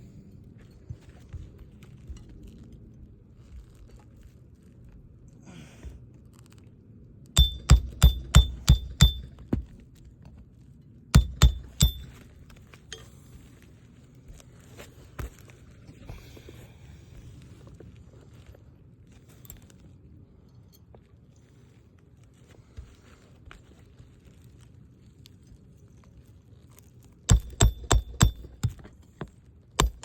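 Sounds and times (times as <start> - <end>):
hammer striking roofing nails: 7.4 - 9.6, 11.2 - 12.2, 27.3 - 28.9, 29.8 - 30.0.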